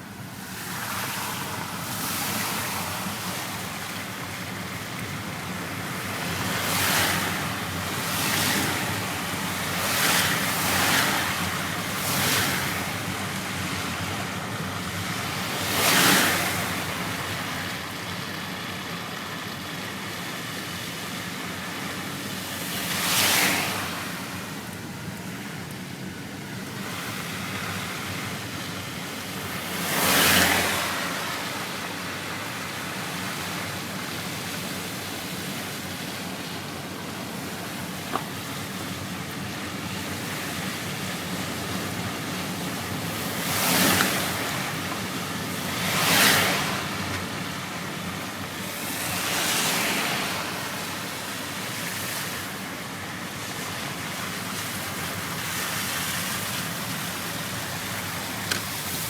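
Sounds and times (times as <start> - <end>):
vehicles swishing through floodwater: 0.0 - 59.0
heavy rain: 35.8 - 59.0.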